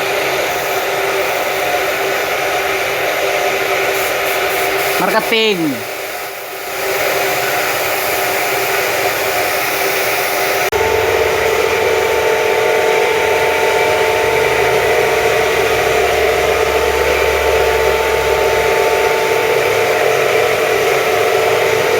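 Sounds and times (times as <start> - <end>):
paint spray gun hissing: 0.2 - 10.7
steady whir: 5.0 - 21.9.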